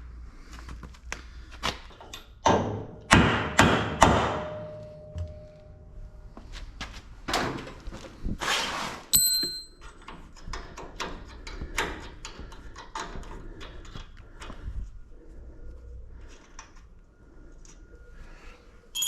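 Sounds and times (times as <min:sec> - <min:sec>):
ringing metal clang: 0:04.1 - 0:06.2, 0:09.2 - 0:09.8.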